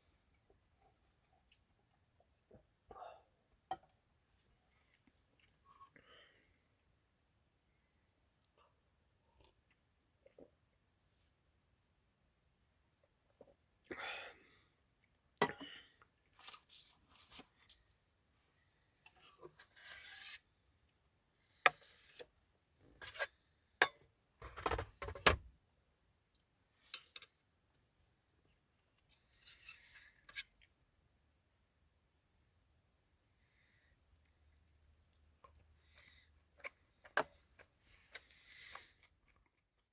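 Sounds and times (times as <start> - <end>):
rustles and scrapes: 16.3 - 18.0, 19.1 - 20.5, 29.0 - 30.5.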